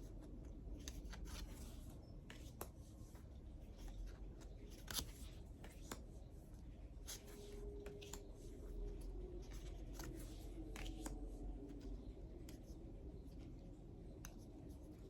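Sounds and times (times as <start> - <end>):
faint low room hum: 0.0 - 15.0
cards clicking and tapping: 0.4 - 6.1, 7.1 - 8.4, 9.4 - 12.8
cards sliding: 3.8 - 6.0, 9.4 - 11.2.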